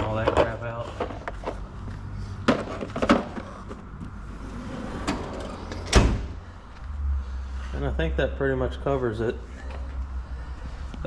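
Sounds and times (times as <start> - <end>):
drawer sliding shut clunk: 5.0 - 6.3.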